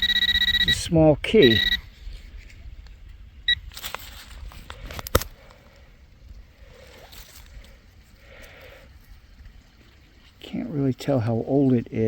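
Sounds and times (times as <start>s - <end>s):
metal detector beep: 0.0s - 1.9s, 3.5s - 3.7s
scraping and clicking of dirt: 2.0s - 5.9s
creek trickling: 5.4s - 12.0s.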